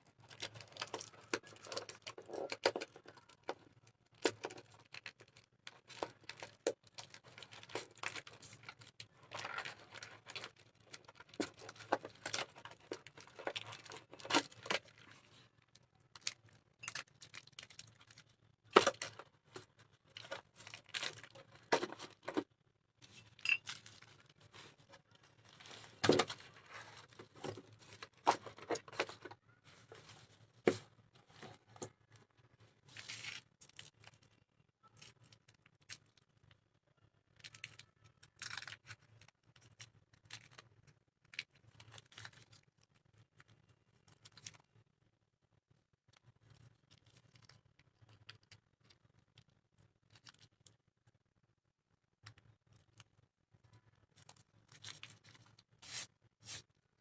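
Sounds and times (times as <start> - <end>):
plastic packets crinkling and tearing: 0.3 - 22.4.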